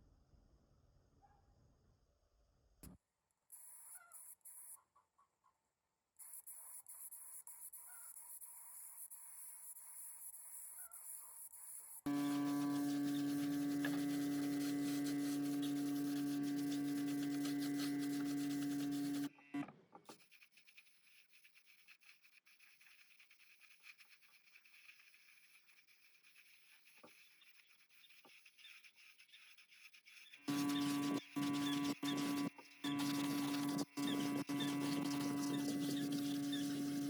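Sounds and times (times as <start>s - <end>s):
small electric motor humming: 12.1s - 19.6s, 30.2s - 37.0s.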